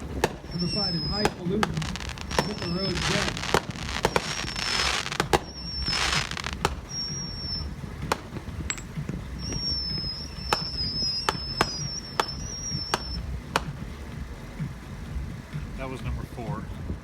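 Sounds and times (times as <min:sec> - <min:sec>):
firework shell reports: 0:00.0 - 0:13.8, 0:15.6 - 0:16.8
firework hiss: 0:00.0 - 0:14.0
high wavering whistle: 0:00.3 - 0:13.3.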